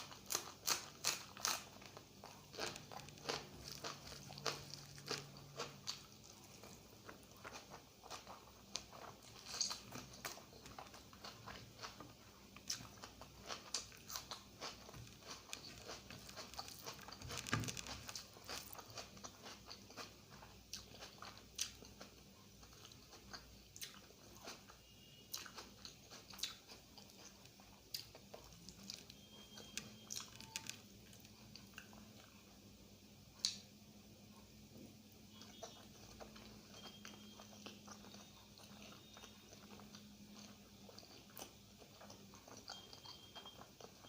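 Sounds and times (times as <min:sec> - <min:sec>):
wet chewing mouth sounds: 0:25.3 - 0:30.7, 0:35.3 - 0:44.0.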